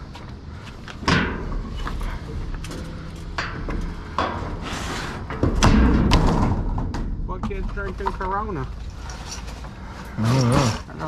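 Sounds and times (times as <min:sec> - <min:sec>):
trash clunking in a dumpster: 0:01.0 - 0:08.9.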